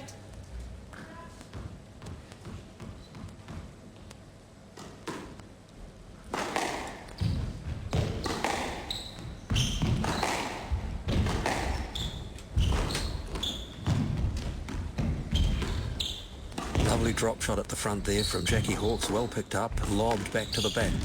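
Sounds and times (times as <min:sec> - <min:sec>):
shoe squeaks on court floor: 0:02.9 - 0:03.3, 0:08.2 - 0:10.4, 0:11.7 - 0:13.9, 0:15.3 - 0:17.2, 0:18.1 - 0:21.0
squash ball hits: 0:06.3 - 0:17.2.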